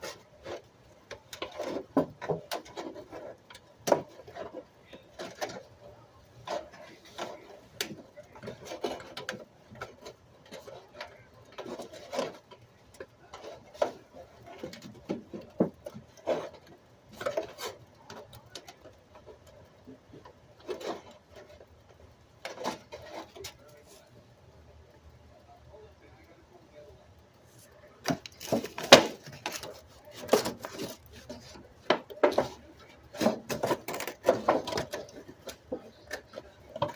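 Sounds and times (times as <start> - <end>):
rustling: 27.3 - 36.9.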